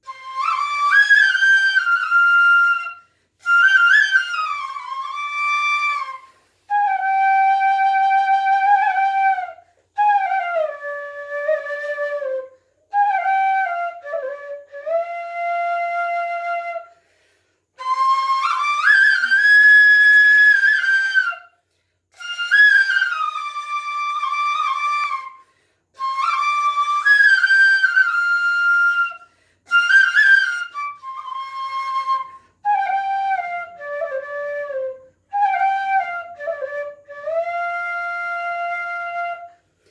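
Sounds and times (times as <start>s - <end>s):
bamboo flute melody: 0.0s - 17.0s, 17.8s - 39.9s.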